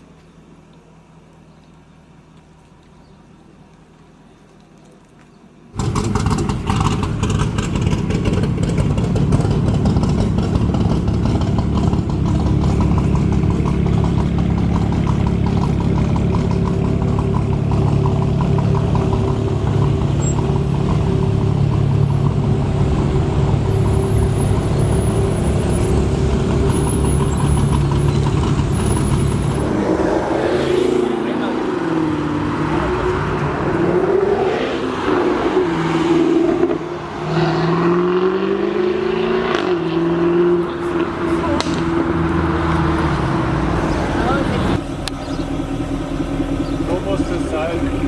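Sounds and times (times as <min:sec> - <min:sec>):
car engine starting and idling: 0:05.7 - 0:37.2, 0:38.9 - 0:48.0.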